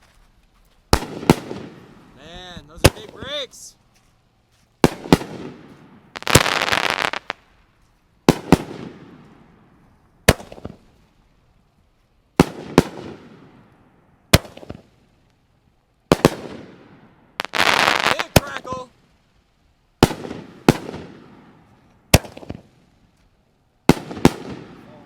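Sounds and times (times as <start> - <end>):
firework crackle: 0.0 - 25.0
firework shells bursting: 0.9 - 3.7, 4.8 - 9.6, 10.2 - 11.1, 16.1 - 18.9.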